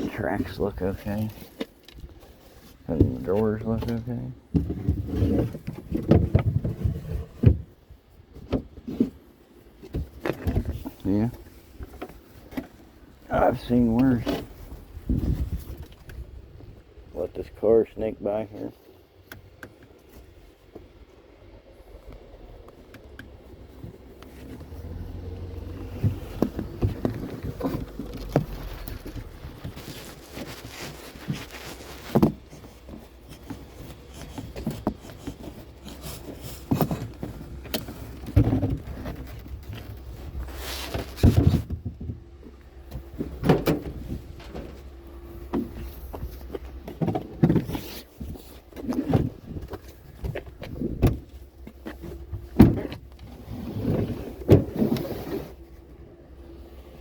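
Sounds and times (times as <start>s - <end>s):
low steady hum: 0.0s - 57.0s
objects knocking and clunking: 2.9s - 7.8s, 25.8s - 53.2s.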